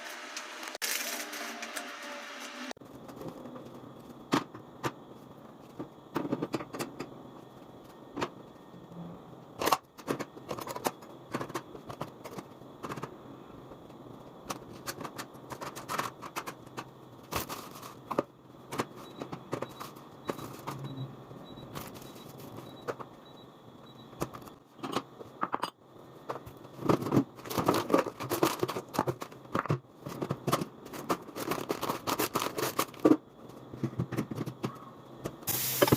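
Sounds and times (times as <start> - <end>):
objects knocking and rattling: 5.6 - 7.1, 24.2 - 35.9
faint high beeps: 20.8 - 24.2.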